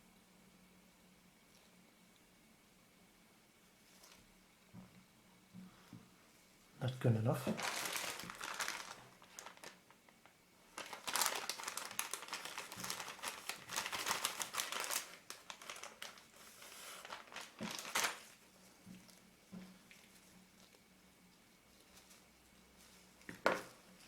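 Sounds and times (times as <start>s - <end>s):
lens tissue crinkling: 7.3s - 24.0s.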